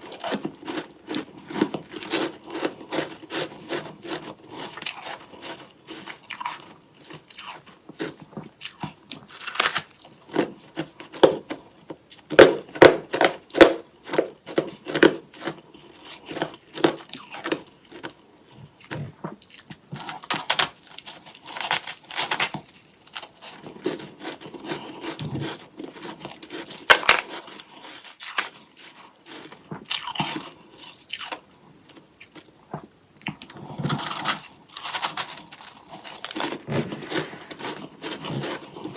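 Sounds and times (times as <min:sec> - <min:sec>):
crunching and chewing frost: 0:00.0 - 0:38.9.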